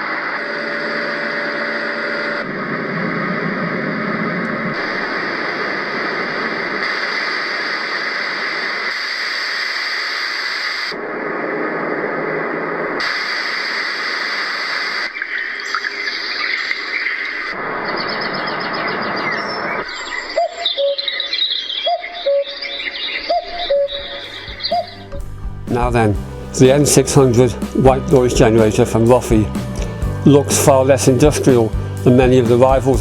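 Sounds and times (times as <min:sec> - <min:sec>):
noise machine chirps: 0:00.0 - 0:12.2, 0:13.0 - 0:26.6
white noise machine hiss: 0:00.0 - 0:20.7.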